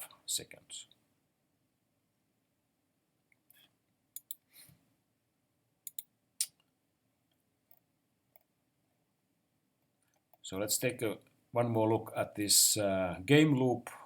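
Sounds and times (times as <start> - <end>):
low room hiss: 0.0 - 14.0
short clicks: 4.2 - 4.4, 5.8 - 6.7.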